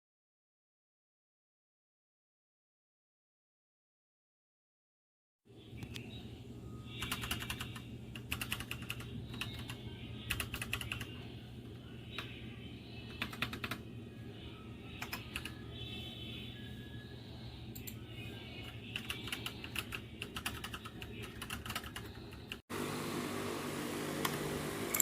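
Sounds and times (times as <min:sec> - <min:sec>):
mechanical keyboard typing: 0:07.0 - 0:09.7, 0:10.3 - 0:11.1, 0:13.2 - 0:13.8, 0:15.0 - 0:15.5, 0:18.9 - 0:22.6.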